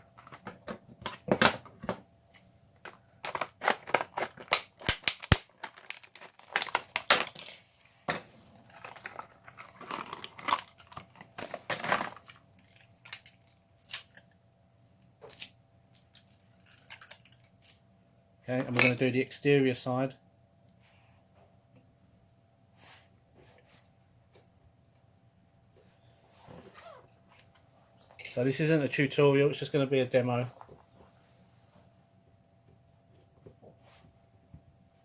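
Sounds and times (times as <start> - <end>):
packaging clicks: 2.9 - 7.6
packaging crinkling and tearing: 2.9 - 7.7, 8.6 - 14.2.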